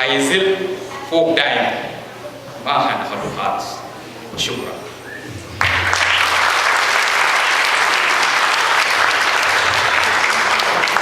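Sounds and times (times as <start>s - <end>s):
audience applauding: 5.4s - 11.0s.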